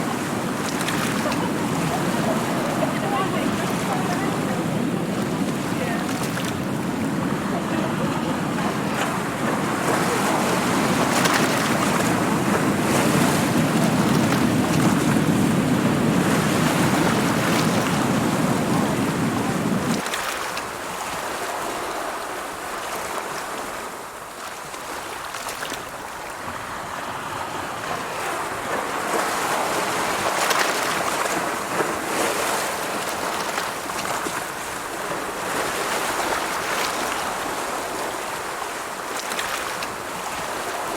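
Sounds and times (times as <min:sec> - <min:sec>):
ocean surf rushing: 0:00.0 - 0:24.1, 0:26.2 - 0:40.9.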